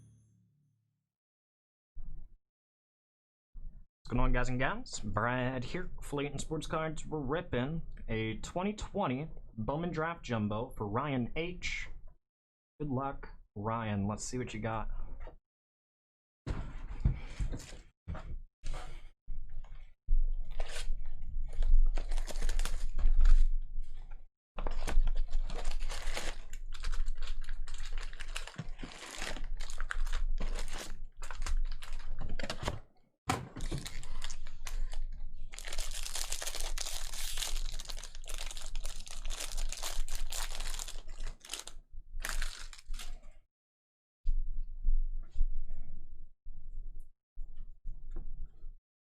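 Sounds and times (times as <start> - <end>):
wrappers torn and crinkled: 21.6 - 23.4, 24.6 - 32.4, 33.6 - 43.2.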